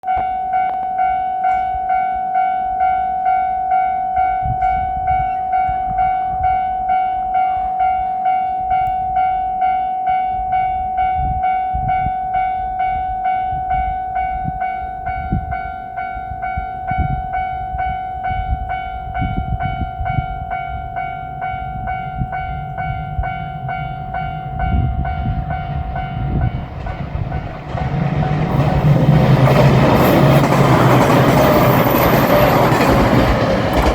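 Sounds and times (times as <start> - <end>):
train rumbling: 0.0 - 9.7, 10.4 - 33.9
level crossing bell dinging: 0.0 - 27.5
diesel train arriving loudly: 20.4 - 33.9.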